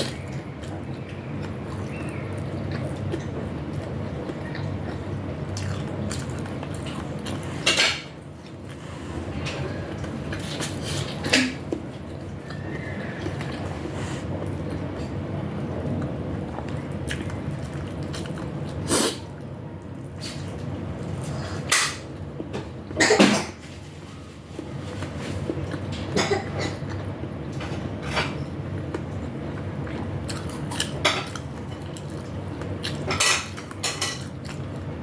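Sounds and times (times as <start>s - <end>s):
steady low hum: 0.0s - 35.0s
utensils clinking against dishes: 32.9s - 34.3s.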